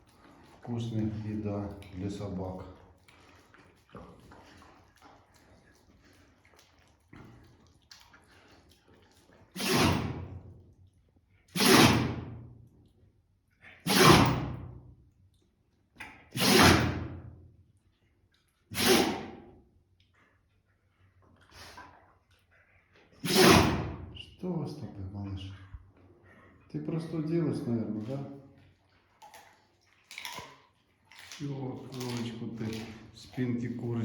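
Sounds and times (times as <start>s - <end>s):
dog sneezing: 9.6s - 10.2s, 11.5s - 12.2s, 13.8s - 14.6s, 16.3s - 17.0s, 18.7s - 19.4s, 23.2s - 24.0s.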